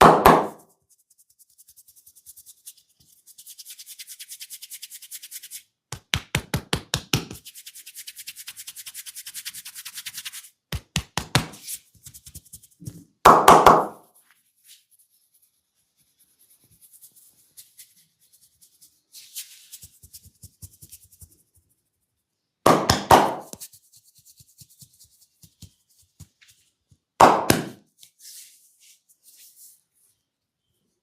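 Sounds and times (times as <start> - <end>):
hands slapping head: 0.0 - 0.6, 5.9 - 7.4, 10.7 - 11.6, 13.3 - 14.0, 22.7 - 23.7, 27.2 - 27.8
scalp rubbing and scratching: 0.5 - 5.8, 7.4 - 10.7, 11.5 - 12.9, 14.0 - 22.5, 23.5 - 26.9, 28.0 - 30.3.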